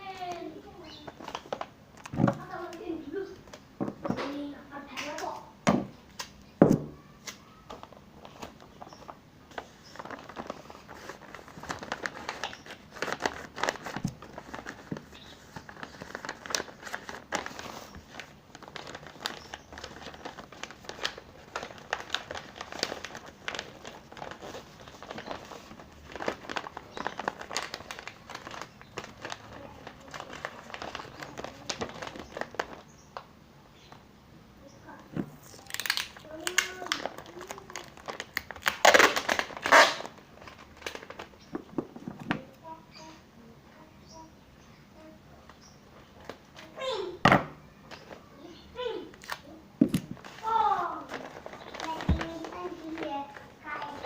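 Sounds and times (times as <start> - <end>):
packaging crinkling: 7.3 - 33.2, 35.2 - 41.6, 49.2 - 54.0.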